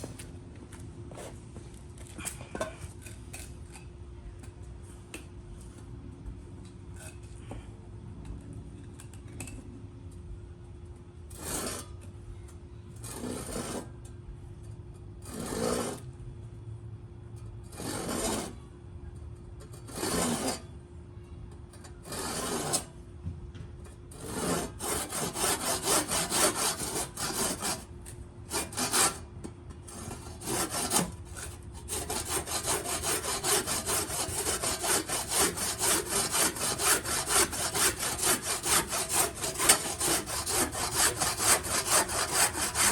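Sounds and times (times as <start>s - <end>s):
handsaw cutting wood: 19.9s - 20.6s, 22.1s - 22.9s, 24.1s - 27.9s, 28.5s - 29.2s, 29.9s - 42.9s.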